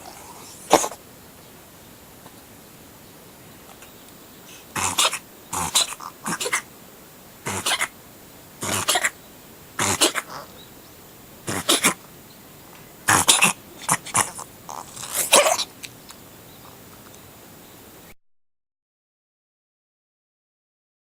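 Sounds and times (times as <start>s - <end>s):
cat sneezing: 0.7s - 1.0s, 4.8s - 6.7s, 7.5s - 8.0s, 8.6s - 9.2s, 9.8s - 10.4s, 11.5s - 12.0s, 13.1s - 14.4s, 15.0s - 15.7s.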